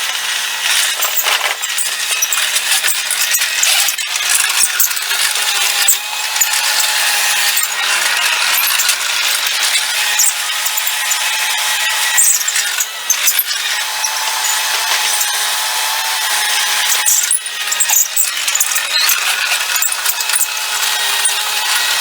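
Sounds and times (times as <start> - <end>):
track loader engine whirring and rattling: 0.0 - 22.0
steady whining tones: 5.0 - 22.0.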